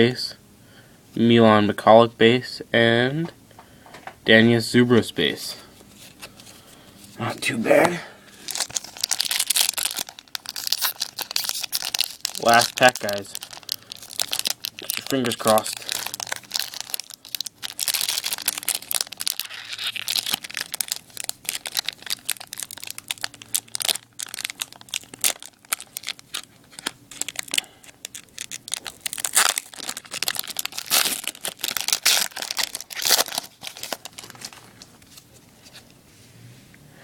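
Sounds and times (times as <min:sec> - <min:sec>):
wrapper tearing and crinkling: 0:08.4 - 0:35.2.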